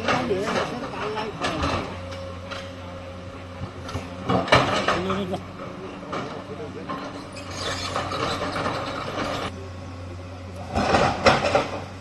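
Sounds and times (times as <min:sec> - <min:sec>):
mechanical rattling and scraping: 0:00.0 - 0:09.6
excavator diesel engine hum: 0:00.0 - 0:12.0
loud clatter: 0:06.1 - 0:09.5.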